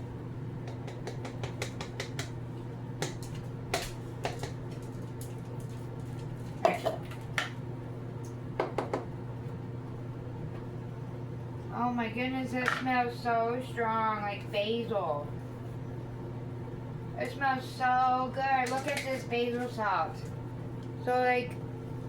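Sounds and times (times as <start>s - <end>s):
low appliance hum: 0.0s - 22.0s.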